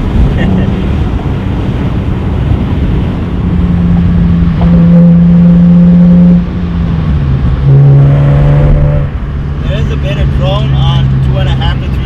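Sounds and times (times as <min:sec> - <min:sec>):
car engine revving loud: 0:00.0 - 0:12.0.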